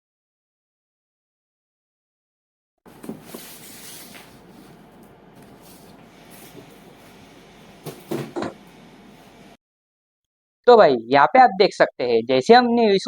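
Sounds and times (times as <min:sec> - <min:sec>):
cardboard rustling and scraping: 0:02.9 - 0:08.4.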